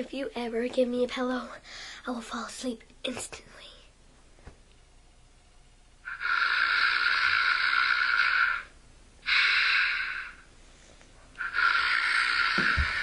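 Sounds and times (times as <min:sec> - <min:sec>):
mock snoring: 0:06.1 - 0:10.4, 0:11.4 - 0:13.0.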